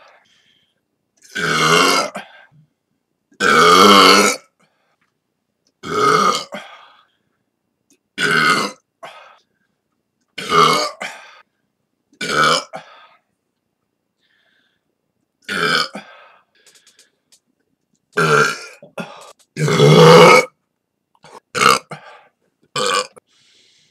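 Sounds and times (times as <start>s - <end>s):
person burping: 1.2s - 2.3s, 3.4s - 4.5s, 5.8s - 6.7s, 8.2s - 9.2s, 10.4s - 11.2s, 12.2s - 13.0s, 15.4s - 16.1s, 18.2s - 20.6s, 21.2s - 23.2s.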